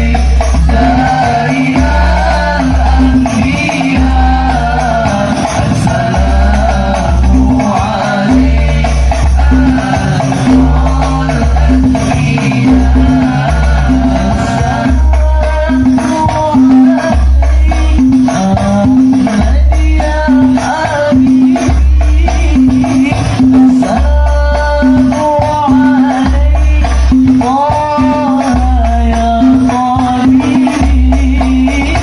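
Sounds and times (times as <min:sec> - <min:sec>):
frame drums: 0:00.0 - 0:32.0
jingling percussion: 0:00.0 - 0:32.0.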